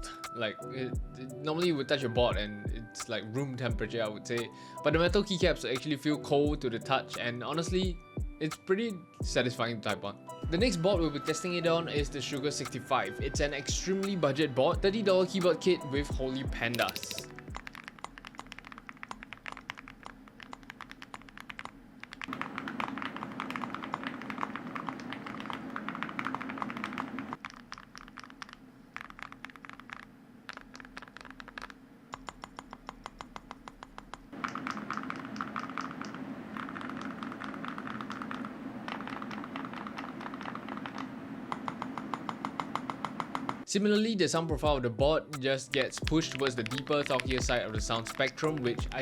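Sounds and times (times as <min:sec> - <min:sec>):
mechanical keyboard typing: 0:15.0 - 0:43.7, 0:45.7 - 0:49.0
spacebar clinking: 0:16.7 - 0:17.4.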